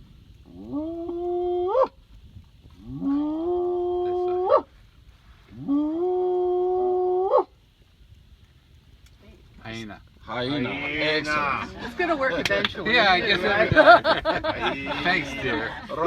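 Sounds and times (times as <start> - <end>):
hyena whooping: 10.4 - 11.9.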